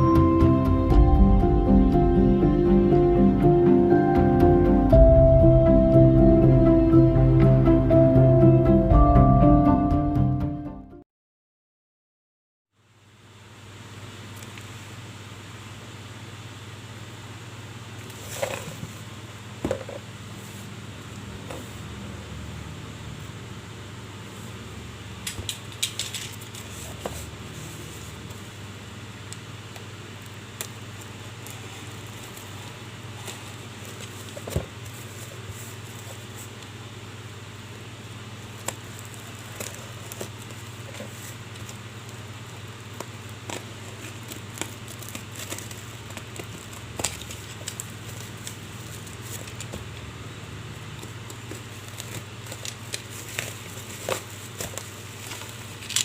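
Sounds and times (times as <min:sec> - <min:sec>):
steady low hum: 0:00.0 - 0:10.6
plastic packaging clicks and crackles: 0:25.2 - 0:26.7, 0:38.5 - 0:50.1, 0:50.9 - 0:56.0.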